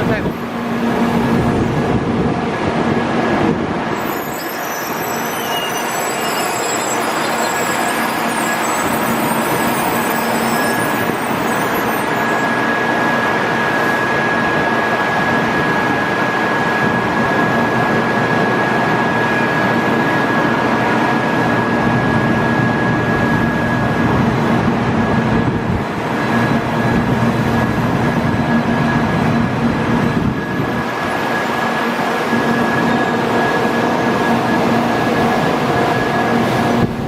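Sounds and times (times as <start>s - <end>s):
high whine: 3.5s - 17.6s.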